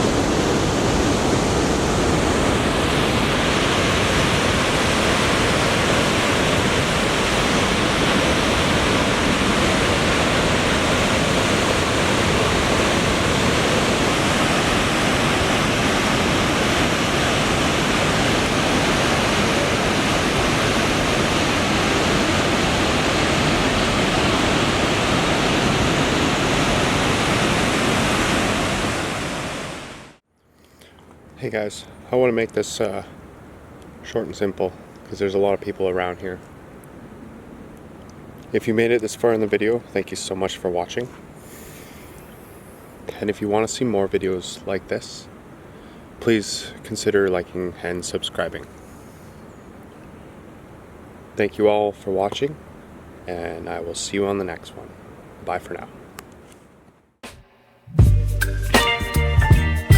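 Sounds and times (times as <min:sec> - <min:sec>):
rushing river: 0:00.0 - 0:30.2.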